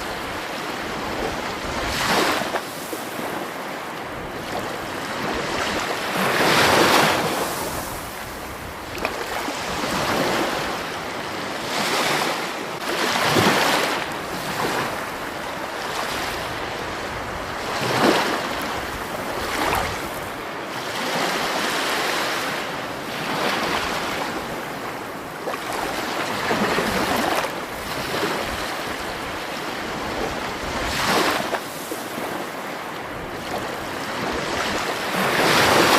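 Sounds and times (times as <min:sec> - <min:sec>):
water rushing and splashing: 0:33.4 - 0:35.9.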